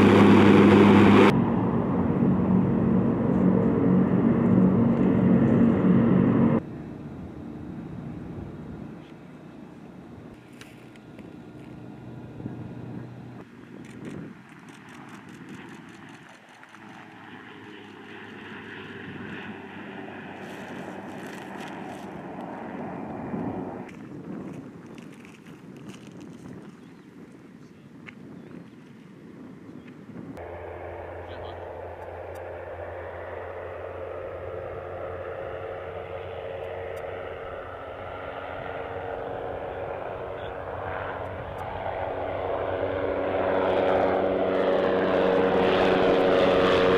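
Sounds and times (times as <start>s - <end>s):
propeller aircraft engine: 0.0s - 46.9s.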